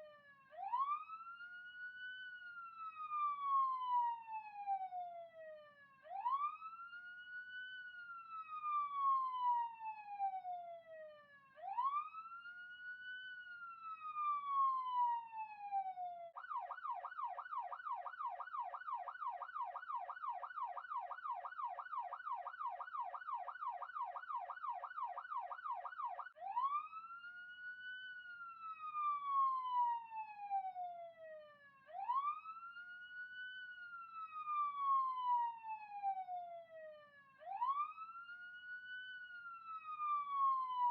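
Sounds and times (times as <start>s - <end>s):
police siren wailing and yelping: 13.6s - 30.9s, 31.9s - 36.4s, 37.4s - 40.9s.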